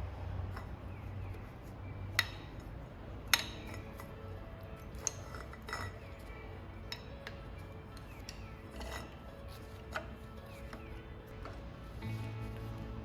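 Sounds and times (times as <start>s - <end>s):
background music: 0.0s - 13.0s
metal tools clinking: 3.3s - 11.6s.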